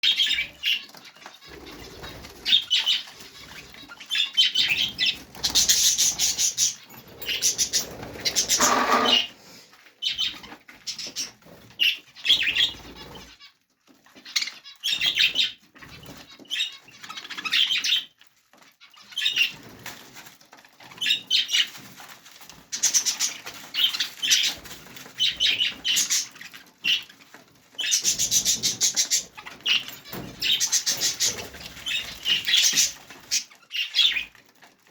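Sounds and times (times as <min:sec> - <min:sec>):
budgerigars chattering: 0:00.0 - 0:00.9, 0:01.5 - 0:09.4
wings flapping: 0:00.6 - 0:09.3, 0:28.0 - 0:34.4.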